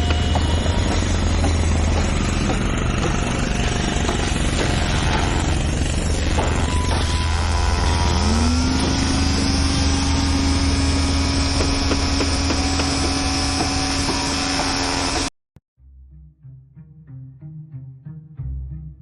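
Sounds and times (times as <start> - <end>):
large engine rumbling: 0.0 - 14.6
engine whine rising: 0.0 - 15.3.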